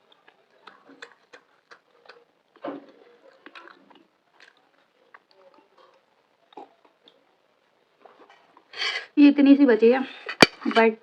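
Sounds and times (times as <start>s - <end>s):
chewing with wet mouth clicks: 0.1s - 7.2s.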